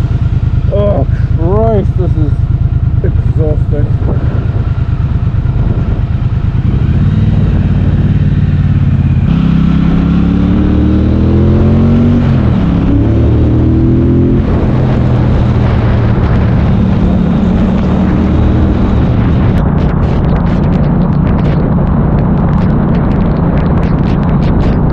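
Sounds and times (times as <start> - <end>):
motorcycle engine revving: 0.0 - 24.9
wind noise: 0.0 - 24.9.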